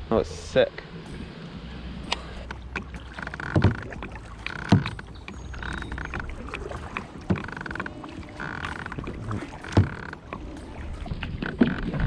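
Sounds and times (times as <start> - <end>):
dull knocks against kayak hull: 2.8 - 5.4, 6.1 - 7.9, 8.6 - 10.3.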